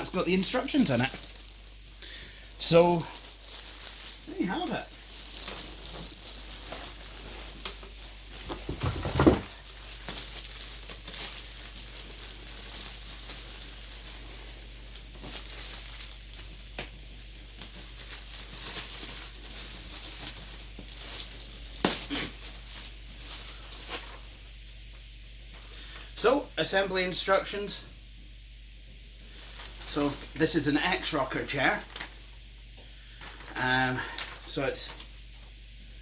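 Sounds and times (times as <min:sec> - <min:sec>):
packaging crinkling and rustling: 0:00.0 - 0:25.8, 0:29.3 - 0:32.4, 0:33.1 - 0:35.5.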